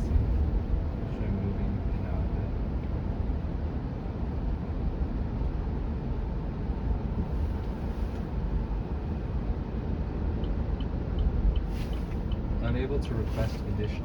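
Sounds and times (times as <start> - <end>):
road and tyre rumble: 0.0 - 14.0
turn signal ticking: 8.8 - 14.0.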